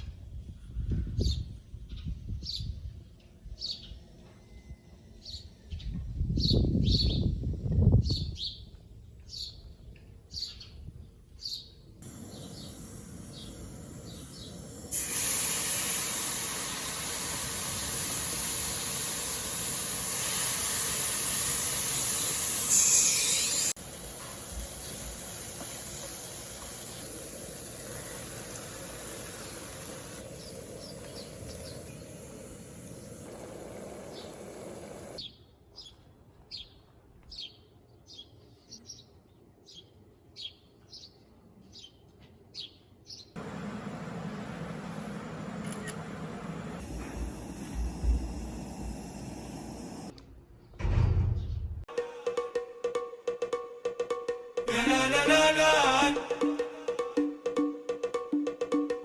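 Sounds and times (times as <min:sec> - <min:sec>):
small birds chirping: 0:08.0 - 0:14.9, 0:24.5 - 0:43.4
steady hiss: 0:12.0 - 0:35.2, 0:43.4 - 0:50.2.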